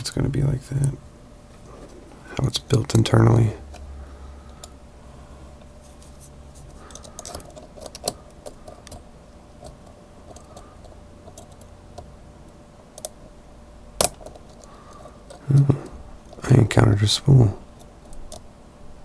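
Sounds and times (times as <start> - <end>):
lock picks clicking: 6.9 - 12.1, 13.0 - 13.2, 14.0 - 15.4.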